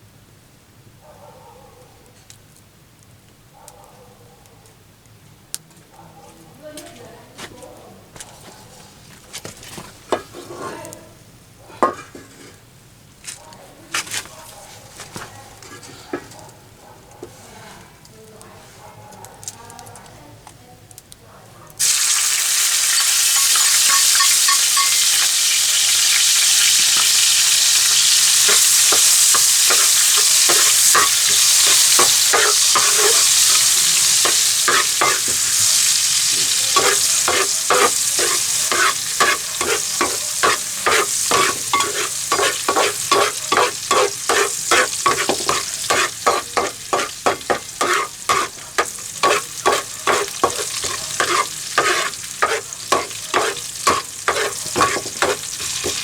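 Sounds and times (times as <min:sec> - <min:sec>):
spatula scraping a pan: 0:09.4 - 0:11.0, 0:11.8 - 0:12.7, 0:14.9 - 0:16.4, 0:21.8 - 0:56.0
food sizzling in hot oil: 0:21.8 - 0:56.0.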